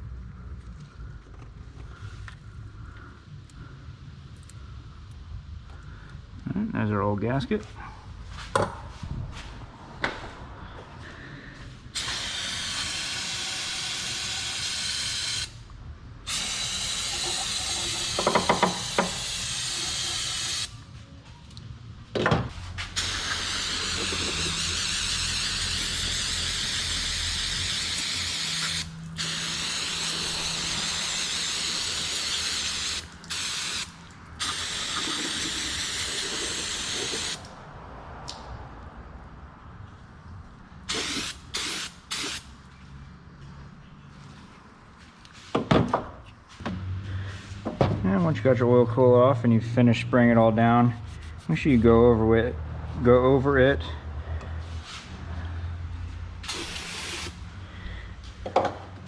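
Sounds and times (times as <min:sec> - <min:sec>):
aerosol spray hissing: 0:12.0 - 0:15.5, 0:16.3 - 0:20.7, 0:22.9 - 0:37.4, 0:40.9 - 0:42.4, 0:56.4 - 0:57.4.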